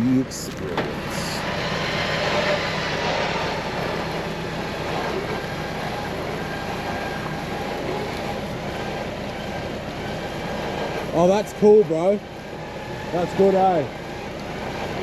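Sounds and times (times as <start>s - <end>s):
log dragging: 0.0s - 11.0s
winch running under load: 0.0s - 15.0s.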